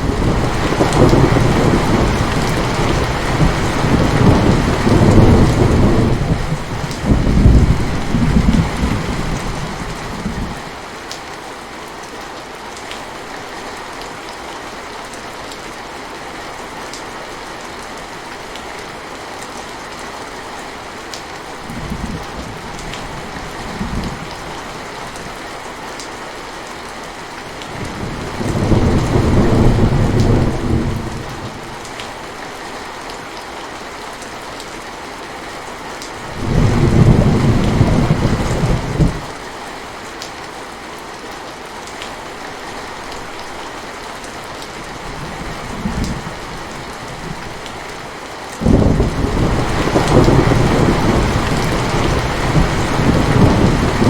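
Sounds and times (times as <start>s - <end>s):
rolling thunder: 0.0s - 10.6s, 27.8s - 31.6s, 36.3s - 39.3s, 48.6s - 54.0s
steady rain: 0.0s - 54.0s.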